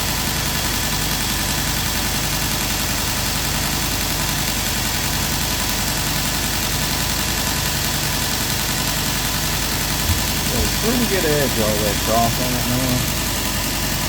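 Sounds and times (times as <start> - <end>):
belt grinder hissing: 9.0 - 14.0.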